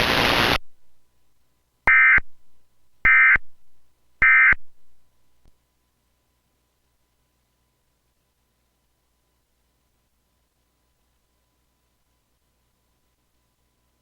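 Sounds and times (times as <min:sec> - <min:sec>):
digital data tone bursts: 0:01.9 - 0:02.3, 0:03.1 - 0:03.4, 0:04.2 - 0:04.6.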